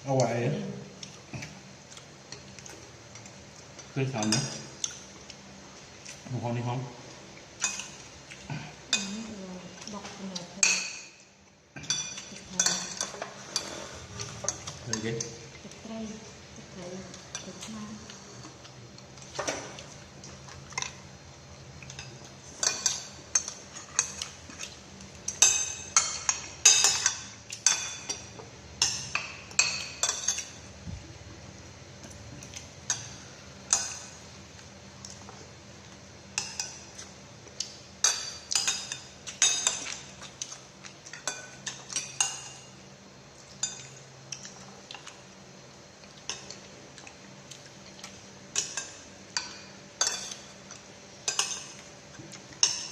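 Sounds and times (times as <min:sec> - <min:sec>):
faint steady hum: 0:00.0 - 0:52.9
utensils clinking against dishes: 0:04.1 - 0:05.0, 0:11.8 - 0:15.4, 0:21.8 - 0:30.7, 0:32.9 - 0:34.2, 0:38.0 - 0:42.8, 0:43.5 - 0:44.6, 0:48.0 - 0:51.9, 0:52.5 - 0:52.9.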